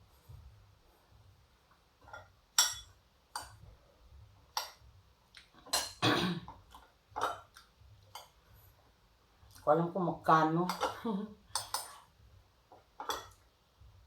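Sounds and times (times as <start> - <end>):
cutlery clinking on plate: 2.1 - 3.6, 5.7 - 6.0, 10.7 - 12.0, 13.0 - 13.4.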